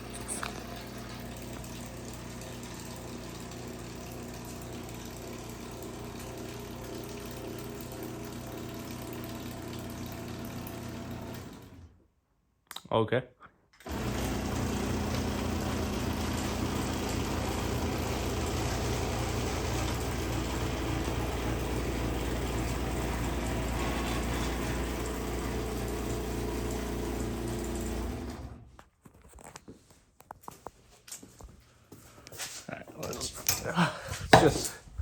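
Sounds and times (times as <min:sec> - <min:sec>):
garage door opener humming: 0:00.0 - 0:12.0, 0:13.8 - 0:28.7.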